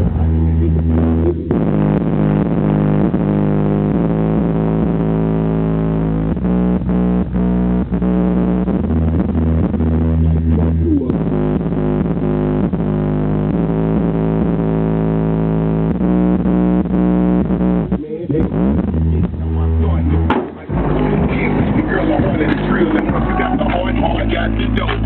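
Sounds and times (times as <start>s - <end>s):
bass-heavy music through subwoofer: 0.0s - 25.0s.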